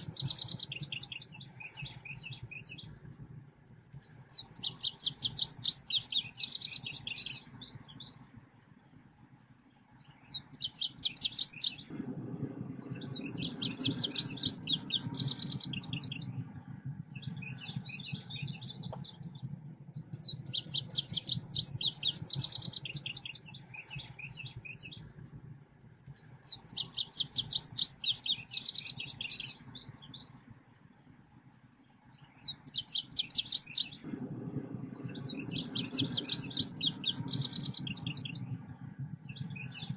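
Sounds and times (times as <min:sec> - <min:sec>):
faint low rumble: 0:00.0 - 0:39.9
bird chirping rapidly: 0:12.9 - 0:16.3, 0:20.0 - 0:25.0, 0:26.2 - 0:30.3, 0:32.1 - 0:34.1, 0:34.9 - 0:38.5.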